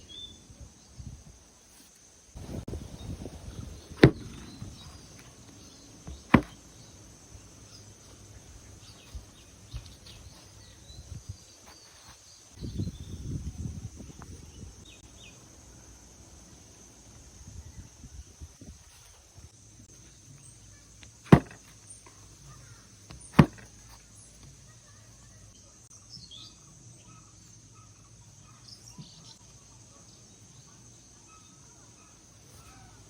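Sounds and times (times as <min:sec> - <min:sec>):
knife knocking on sand: 0:04.0 - 0:04.8, 0:06.1 - 0:06.6, 0:21.3 - 0:21.7, 0:23.1 - 0:23.7
faint high chirping: 0:19.9 - 0:33.0.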